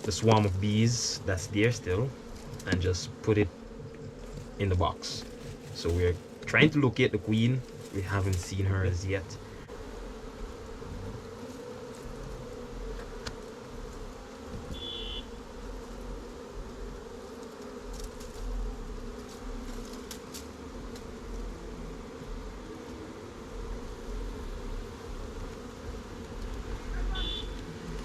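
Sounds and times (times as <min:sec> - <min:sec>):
honey bees buzzing: 0:00.0 - 0:28.0.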